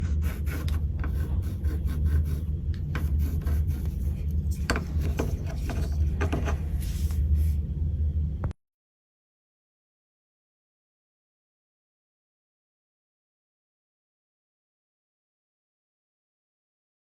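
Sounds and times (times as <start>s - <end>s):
rubbing and scraping: 0.0s - 7.6s
steady low hum: 0.0s - 8.6s.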